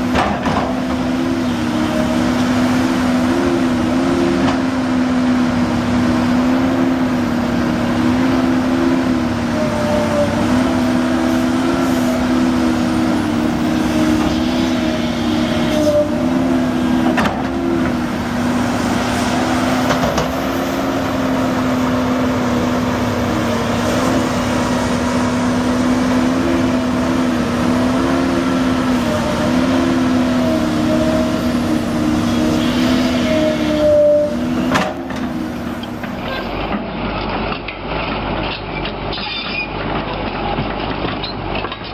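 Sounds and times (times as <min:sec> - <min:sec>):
heavy machine engine running: 0:00.0 - 0:41.9.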